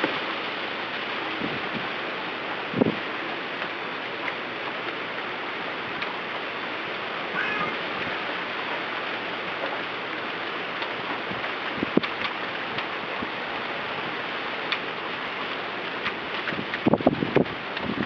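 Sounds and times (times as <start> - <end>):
rushing wind storm: 1.2 - 2.0, 2.6 - 3.2, 7.0 - 9.4, 16.3 - 18.0.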